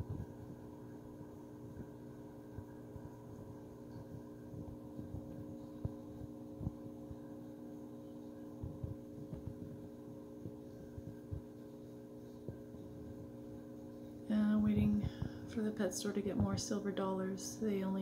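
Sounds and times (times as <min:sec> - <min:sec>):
aquarium equipment hum: 0:00.0 - 0:18.0.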